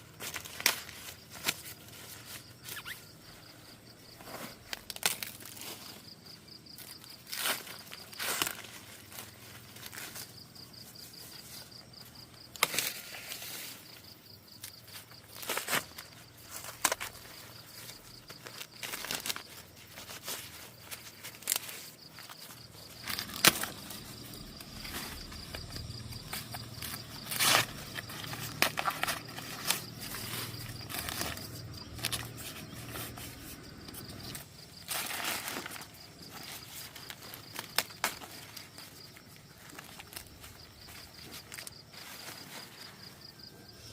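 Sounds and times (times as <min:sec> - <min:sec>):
high insect trill: 0:00.0 - 0:43.9
snaps and crackles: 0:00.2 - 0:03.0, 0:04.3 - 0:05.9, 0:12.4 - 0:13.5, 0:14.6 - 0:42.4
low hum: 0:23.0 - 0:34.4.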